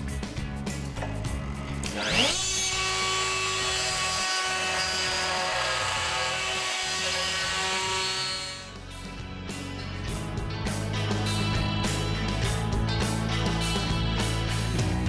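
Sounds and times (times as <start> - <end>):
background music: 0.0 - 15.0
router motor whining: 1.8 - 8.8.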